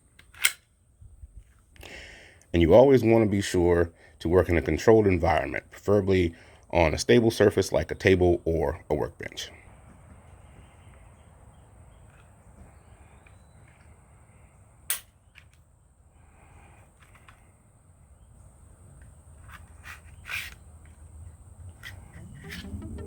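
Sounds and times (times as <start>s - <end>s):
pistol parts clicking and knocking: 0.1s - 0.7s, 14.9s - 15.6s
faint low hum: 0.9s - 23.0s.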